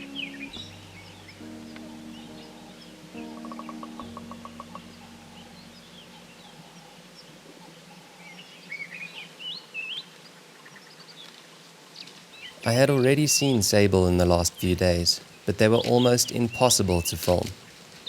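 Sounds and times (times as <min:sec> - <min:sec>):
low steady hum: 0:00.0 - 0:08.7
birds calling and chirping: 0:00.0 - 0:18.0.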